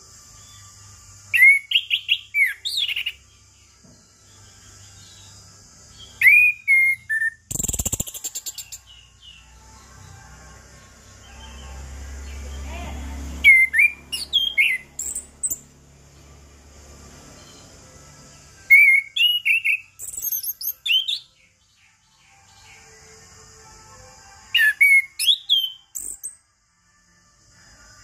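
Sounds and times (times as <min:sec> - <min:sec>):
thrush whistled song: 0:01.2 - 0:03.2, 0:06.1 - 0:08.9, 0:13.4 - 0:15.6, 0:18.6 - 0:21.4, 0:24.5 - 0:26.4.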